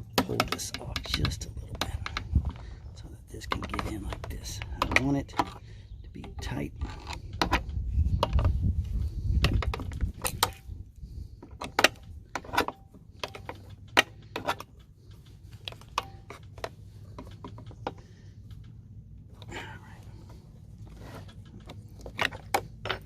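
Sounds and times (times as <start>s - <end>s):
low rumbling handling noise: 0.0s - 23.0s
clicks and taps of small parts: 0.1s - 2.6s.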